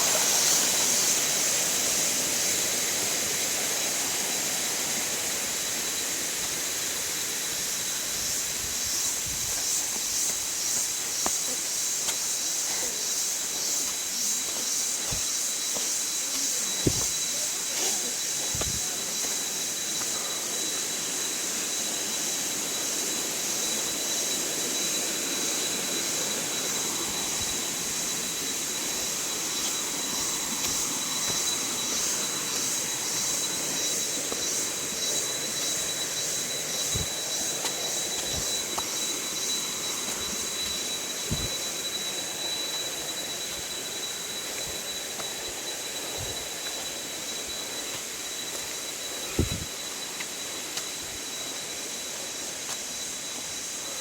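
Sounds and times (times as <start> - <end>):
high pulsing drone: 12.5 - 52.4.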